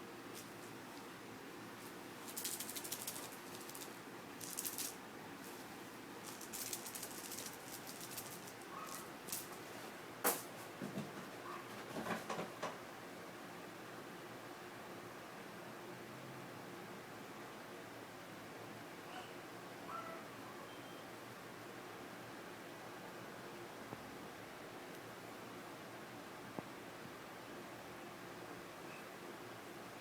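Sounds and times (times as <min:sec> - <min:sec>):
faint room tone hiss: 0:00.0 - 0:30.0
kitten playing with toy rattling: 0:02.2 - 0:05.6, 0:06.2 - 0:09.6.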